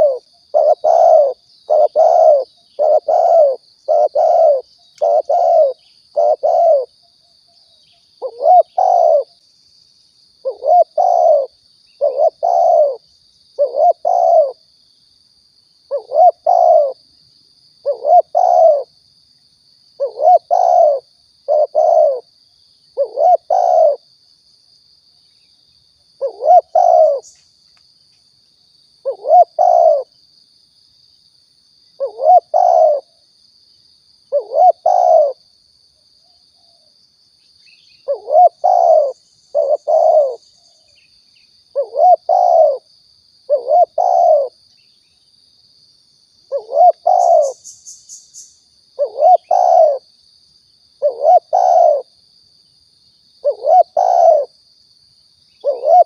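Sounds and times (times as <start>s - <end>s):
dove cooing: 0.0s - 6.9s, 8.2s - 9.3s, 10.4s - 13.0s, 13.6s - 14.6s, 15.9s - 17.0s, 17.8s - 18.9s, 20.0s - 22.3s, 23.0s - 24.0s, 26.2s - 27.4s, 29.0s - 30.1s, 32.0s - 33.2s, 34.3s - 35.4s, 38.0s - 40.4s, 41.7s - 42.9s, 43.5s - 44.6s, 46.5s - 47.6s, 49.0s - 50.1s, 51.0s - 52.1s, 53.4s - 54.5s, 55.6s - 56.0s.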